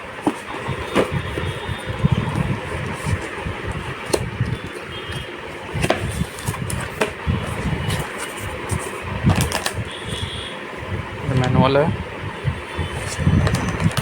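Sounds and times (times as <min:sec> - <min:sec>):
packaging rustling: 0:00.0 - 0:09.8.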